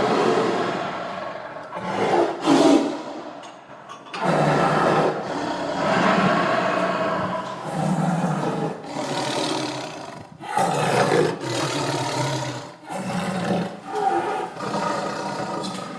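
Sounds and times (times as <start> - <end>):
tiger roaring: 0.0 - 3.2, 4.1 - 15.9.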